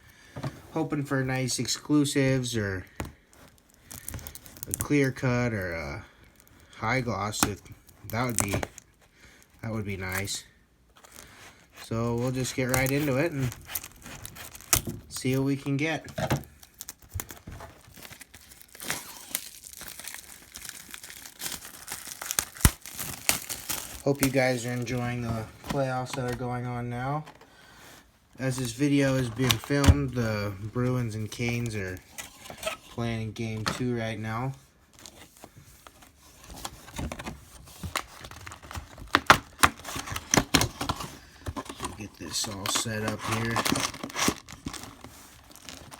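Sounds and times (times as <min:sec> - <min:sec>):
cardboard box and card packs handled: 0:00.2 - 0:45.9
plastic wrapping crinkling and tearing: 0:03.2 - 0:26.7, 0:34.8 - 0:45.9.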